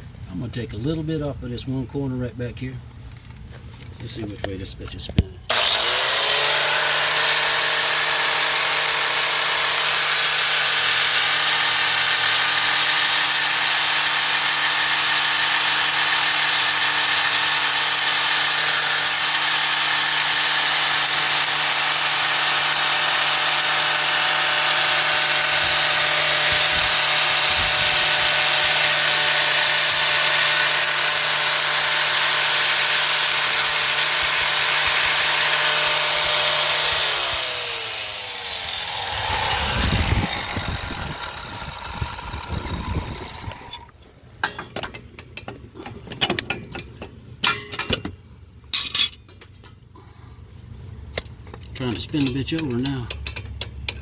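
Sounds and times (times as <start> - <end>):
power tool grinding metal: 5.5 - 44.6.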